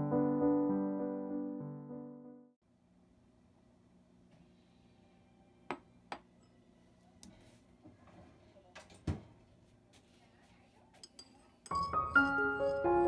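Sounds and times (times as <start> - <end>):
kitchenware clinking: 10.9 - 13.0.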